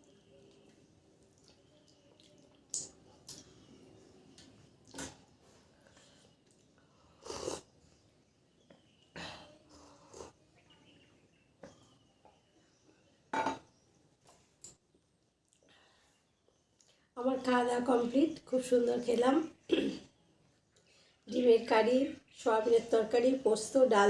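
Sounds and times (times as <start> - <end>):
person eating with smacks: 0.4 - 3.6, 4.3 - 5.4.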